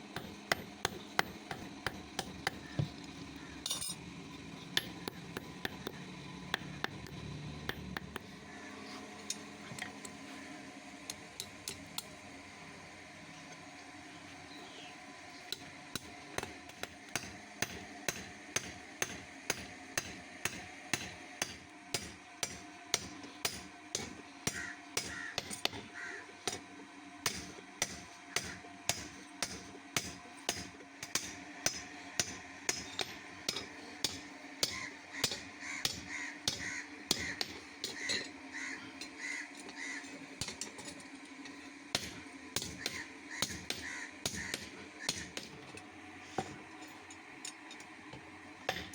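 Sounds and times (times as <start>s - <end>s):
crow cawing: 24.6s - 26.3s, 34.7s - 37.4s, 38.0s - 40.1s, 42.8s - 45.2s.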